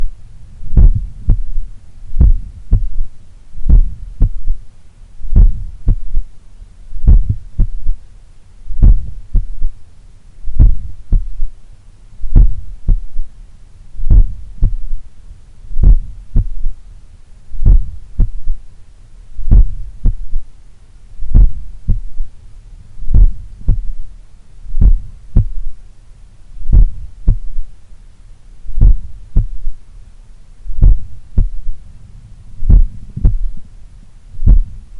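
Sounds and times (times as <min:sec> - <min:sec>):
heartbeat through stethoscope: 0:00.7 - 0:04.6, 0:05.3 - 0:06.3, 0:07.0 - 0:08.0, 0:08.7 - 0:09.8, 0:10.5 - 0:11.5, 0:12.2 - 0:13.3, 0:14.0 - 0:15.0, 0:15.8 - 0:16.8, 0:17.6 - 0:18.6, 0:19.4 - 0:20.4, 0:21.2 - 0:22.3, 0:23.0 - 0:24.0, 0:24.7 - 0:25.8, 0:26.6 - 0:27.7, 0:28.7 - 0:29.8, 0:30.7 - 0:31.8, 0:32.6 - 0:33.6, 0:34.4 - 0:34.9.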